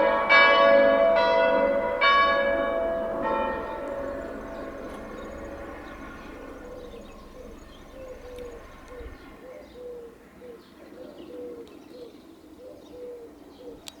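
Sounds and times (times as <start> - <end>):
church bells: 0.0 - 9.5
dove cooing: 1.6 - 13.8
small birds chirping: 1.6 - 14.0.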